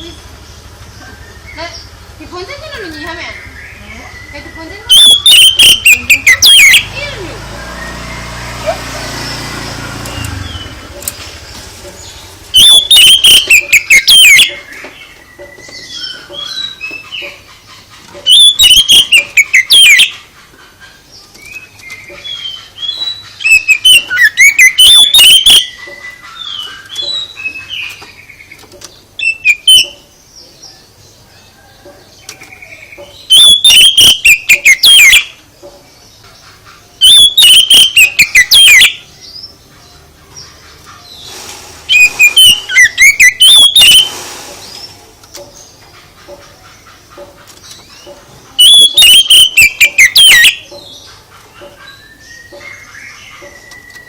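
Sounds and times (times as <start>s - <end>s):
soft bird chirps: 0.0s - 54.0s
songbird warbling whistles: 3.2s - 7.0s, 12.5s - 15.0s, 18.2s - 20.2s, 22.8s - 27.8s, 29.2s - 30.1s, 33.2s - 35.4s, 37.0s - 39.1s, 41.9s - 44.9s, 48.5s - 50.7s.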